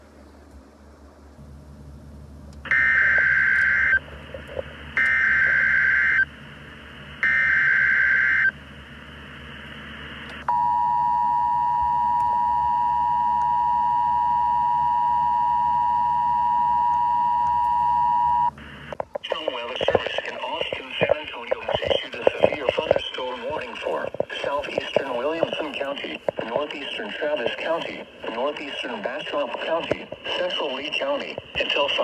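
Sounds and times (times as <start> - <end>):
screeching digital data bursts: 2.7 - 4.1, 5.0 - 6.3, 7.2 - 8.6.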